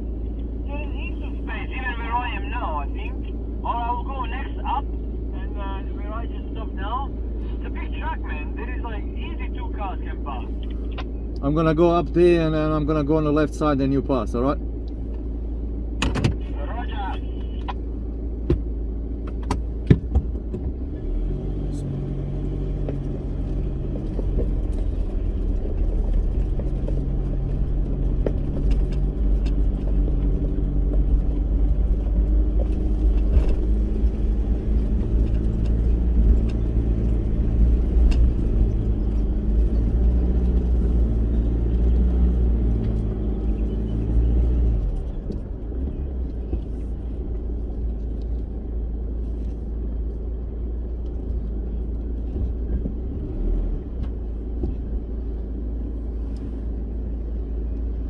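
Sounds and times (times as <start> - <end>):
vehicle engine rumbling: 0.0 - 58.0.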